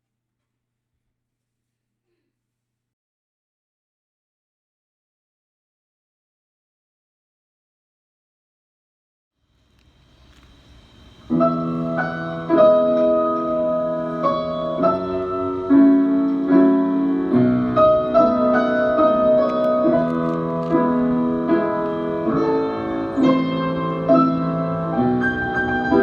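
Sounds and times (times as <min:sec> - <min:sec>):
faint low hiss: 0:09.4 - 0:26.0
piano playing chords and melody: 0:11.2 - 0:26.0.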